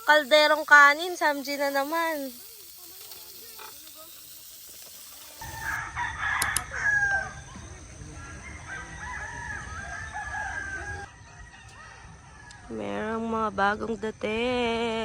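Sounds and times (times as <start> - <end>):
rooster crowing: 5.4 - 12.7.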